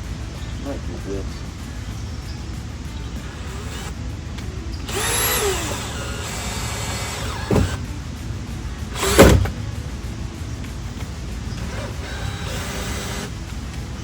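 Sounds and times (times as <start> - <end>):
power drill driving screw into wood: 3.3 - 4.0, 4.9 - 7.8, 9.0 - 9.6, 11.6 - 13.3.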